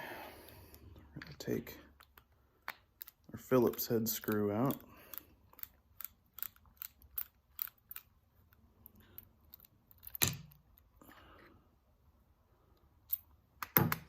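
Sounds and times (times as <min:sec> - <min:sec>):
screwdriver metal clicks: 0:02.0 - 0:08.6.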